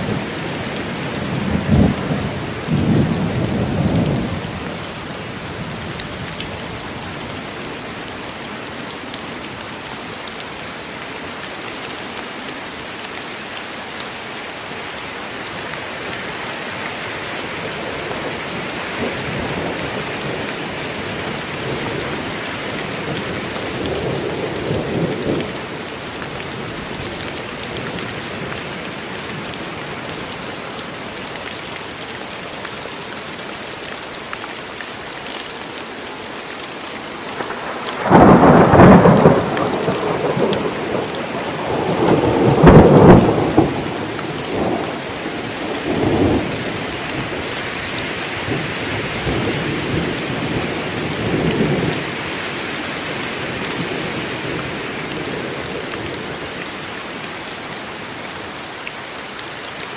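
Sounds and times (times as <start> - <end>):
heavy rain: 0.0 - 59.9
thunder crack and rumble: 37.4 - 45.0.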